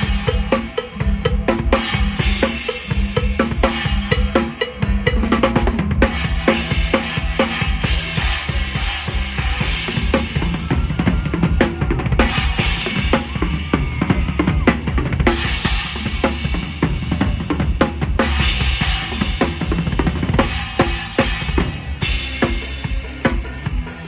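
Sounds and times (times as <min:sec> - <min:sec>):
cymbals washing: 0:00.0 - 0:17.2.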